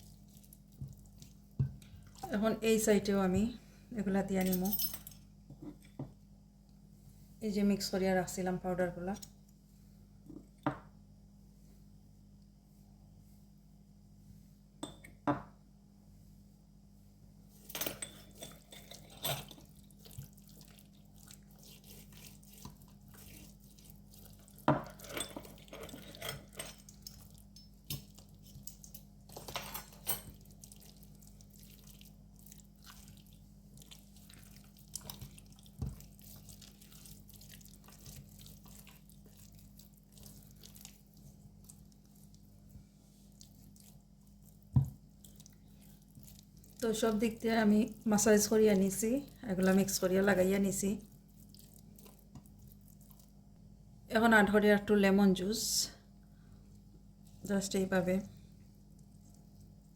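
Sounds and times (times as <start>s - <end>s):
hands squishing raw meat: 0.0s - 2.4s, 19.5s - 25.7s, 30.3s - 53.6s.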